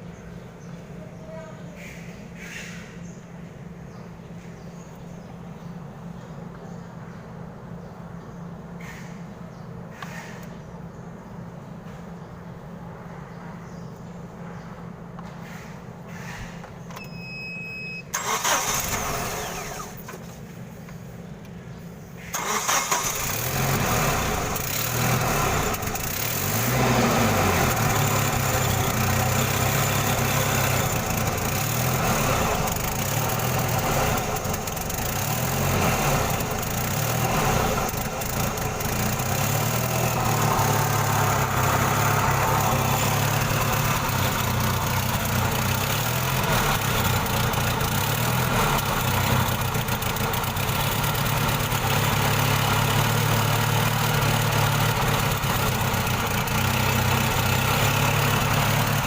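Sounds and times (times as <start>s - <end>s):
forklift engine starting and revving: 17.0s - 20.5s, 22.2s - 59.0s.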